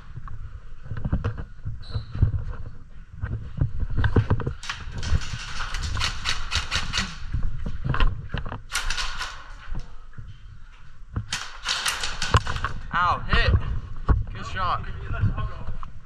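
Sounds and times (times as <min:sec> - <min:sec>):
sharp clicks and knocks: 0:04.0 - 0:10.0, 0:11.2 - 0:13.0.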